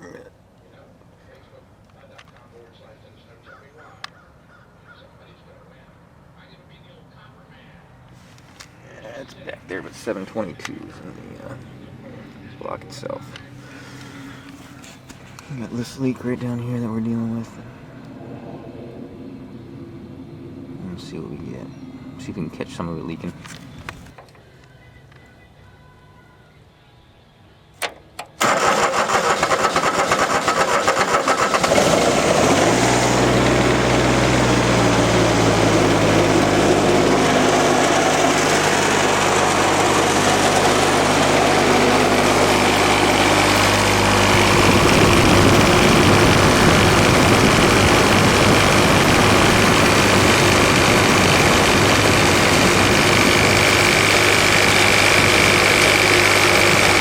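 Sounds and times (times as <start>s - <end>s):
diesel engine cranking: 27.8s - 57.0s
diesel engine idling: 28.4s - 57.0s.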